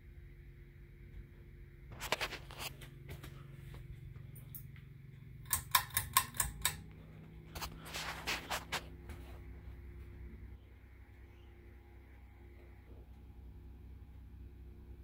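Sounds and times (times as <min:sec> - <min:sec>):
ceiling fan motor humming: 0:00.0 - 0:15.0.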